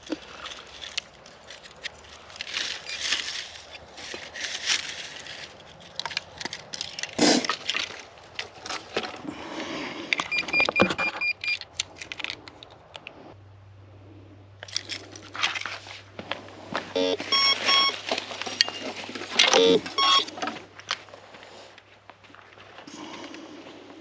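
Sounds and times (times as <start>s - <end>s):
crunching in leaf litter: 0.0s - 9.7s, 14.6s - 19.4s
metal detector beeps: 10.2s - 11.6s, 16.9s - 20.4s
steady low hum: 11.8s - 24.0s.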